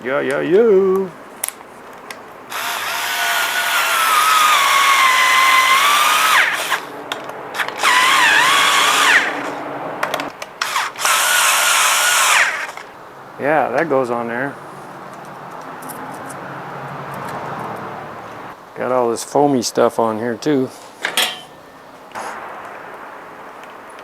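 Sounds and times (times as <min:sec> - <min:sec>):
cordless screwdriver motor whining: 0:02.5 - 0:06.9.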